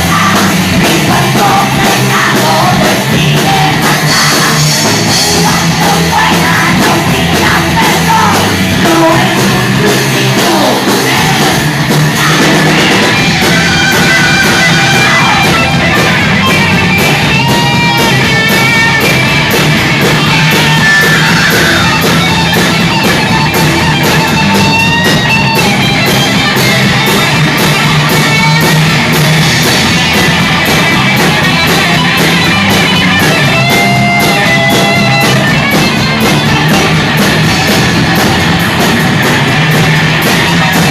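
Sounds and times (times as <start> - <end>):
person singing: 0.0 - 19.1
bass guitar: 0.0 - 40.9
drums keeping a steady beat: 0.0 - 40.9
electric guitars: 0.0 - 40.9
rock band playing live: 0.0 - 40.9.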